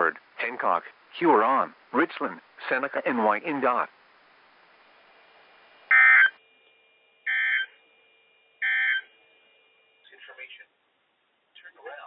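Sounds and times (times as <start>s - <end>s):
harsh warbling data tone: 5.9s - 6.4s.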